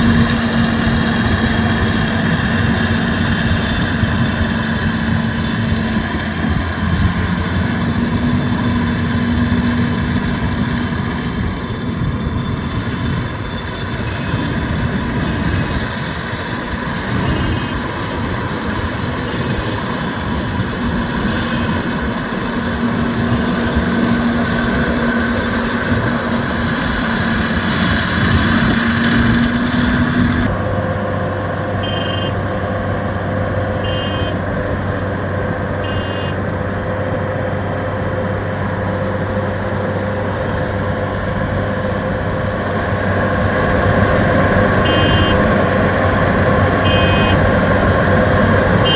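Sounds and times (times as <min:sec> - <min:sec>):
combine harvester running: 0:00.0 - 0:48.9
short high beeps: 0:31.8 - 0:32.4, 0:33.8 - 0:34.4, 0:35.8 - 0:36.4, 0:44.9 - 0:45.4, 0:46.9 - 0:47.4.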